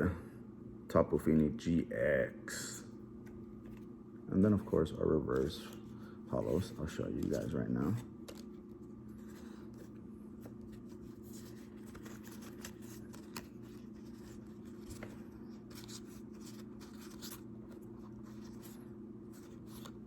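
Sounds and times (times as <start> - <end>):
trading cards being handled: 3.2 - 20.0.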